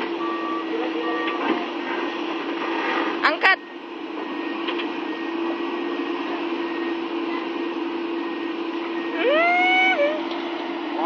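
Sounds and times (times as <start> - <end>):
excavator engine droning: 0.0 - 11.0
person calling out: 9.2 - 10.2.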